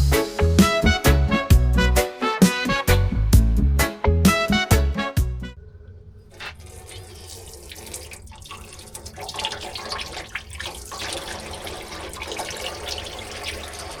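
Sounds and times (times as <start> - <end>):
drips and spatters: 5.5 - 14.0
liquid pouring and splashing: 5.5 - 14.0.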